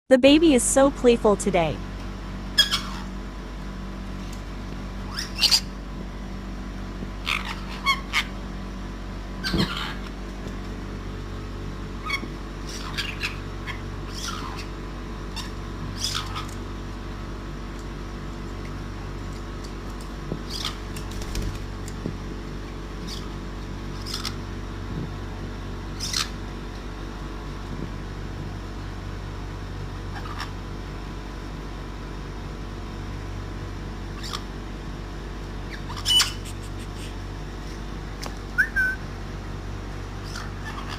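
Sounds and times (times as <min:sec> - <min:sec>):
low hum: 0:00.1 - 0:40.9
parrot squeaking and chirping: 0:02.5 - 0:03.1, 0:05.1 - 0:05.8, 0:07.2 - 0:08.4, 0:09.4 - 0:10.1, 0:12.0 - 0:16.5, 0:20.5 - 0:20.8, 0:24.0 - 0:24.4, 0:26.0 - 0:26.4, 0:30.1 - 0:30.5, 0:34.2 - 0:34.4, 0:35.7 - 0:37.1, 0:38.5 - 0:39.0, 0:40.2 - 0:40.9.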